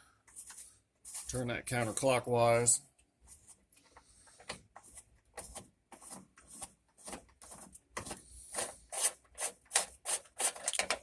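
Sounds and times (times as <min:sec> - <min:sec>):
screwdriver scraping and clicking metal: 0:08.0 - 0:11.0.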